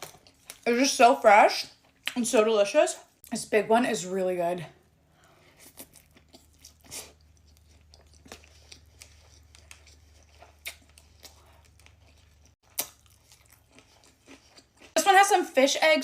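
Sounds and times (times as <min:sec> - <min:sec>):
chewing with wet mouth clicks: 0:05.6 - 0:15.0.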